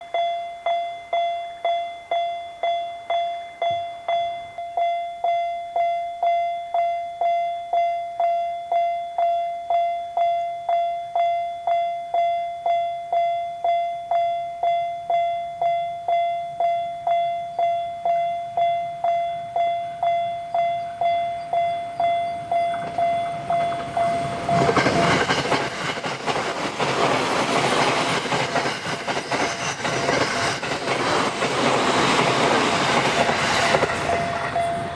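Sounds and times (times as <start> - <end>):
railroad crossing warning bell: 0.0 - 34.9
train running and wheel clatter: 18.1 - 34.9.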